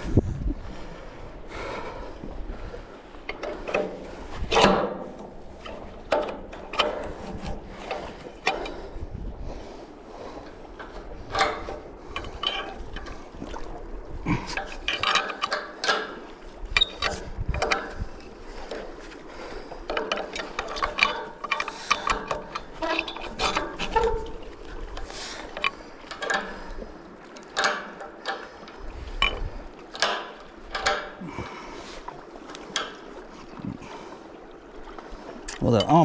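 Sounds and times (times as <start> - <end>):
metal car jack handle clanking: 4.5 - 7.1.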